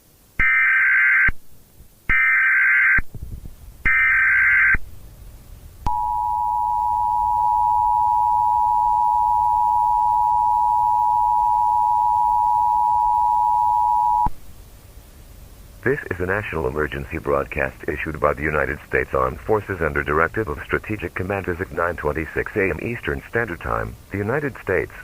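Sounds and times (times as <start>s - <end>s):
data tone bursts: 5.9s - 14.3s
two-tone attention signal: 5.9s - 14.3s.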